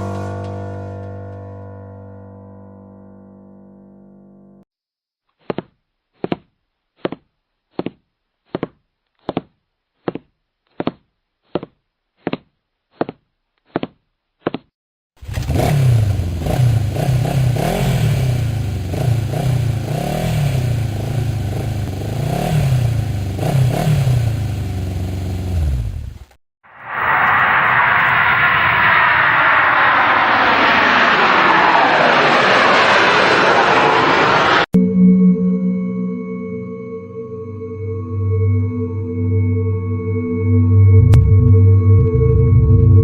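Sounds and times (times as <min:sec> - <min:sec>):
engine revving: 0:15.2 - 0:34.7.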